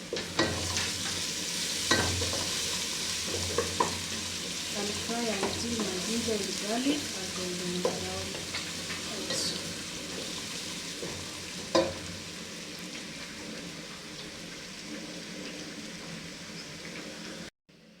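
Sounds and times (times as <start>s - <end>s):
vegetables sizzling in hot oil: 0.0s - 17.5s
knock against pan: 11.0s - 12.0s.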